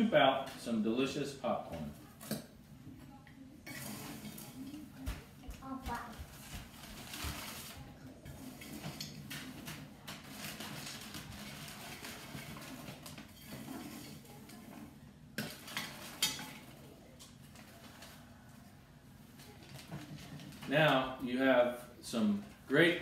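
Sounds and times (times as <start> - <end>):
popcorn being scooped: 3.6 - 4.8, 6.4 - 23.0.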